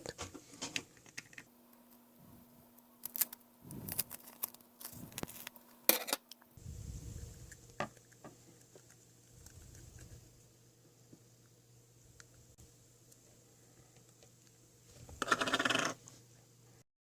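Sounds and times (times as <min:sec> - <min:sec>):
faint clicks and rustles of tape: 0:00.0 - 0:06.5.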